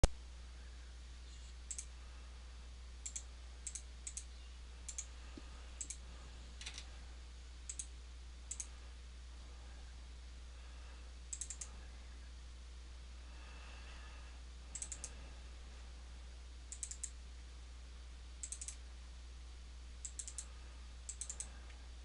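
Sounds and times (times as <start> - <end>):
low electrical hum: 0.0 - 22.0
computer mouse clicks: 1.7 - 1.9, 3.0 - 4.3, 4.9 - 5.1, 5.8 - 6.0, 7.7 - 7.9, 8.5 - 8.7, 11.3 - 11.7, 14.7 - 15.2, 16.7 - 17.2, 18.4 - 18.8, 20.0 - 20.5, 21.1 - 21.6.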